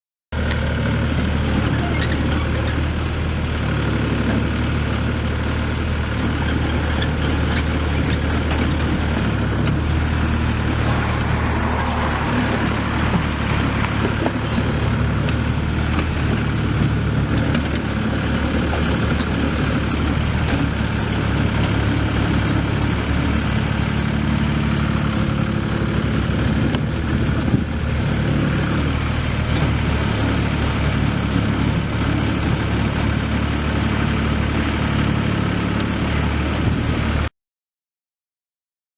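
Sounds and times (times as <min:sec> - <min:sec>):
diesel excavator engine running: 0:00.4 - 0:37.3.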